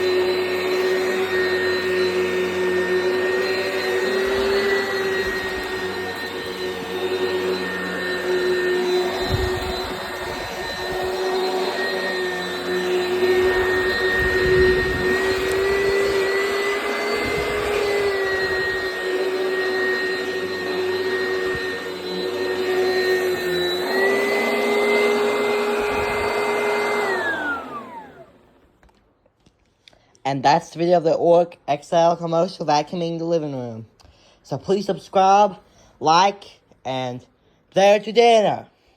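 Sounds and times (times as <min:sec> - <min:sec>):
vacuum cleaner motor whine: 0:00.0 - 0:29.0.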